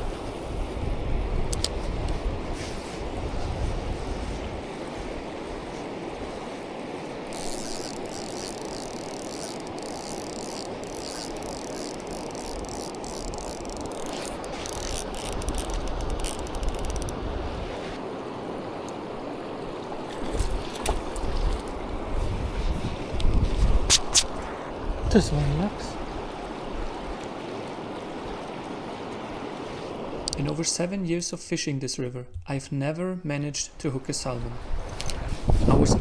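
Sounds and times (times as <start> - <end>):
wind rumble on microphone: 0.0 - 6.7, 11.4 - 18.0, 20.3 - 27.6, 34.5 - 36.0
river water rushing: 4.4 - 22.2, 24.0 - 30.8
fishing reel clicking: 7.4 - 17.1.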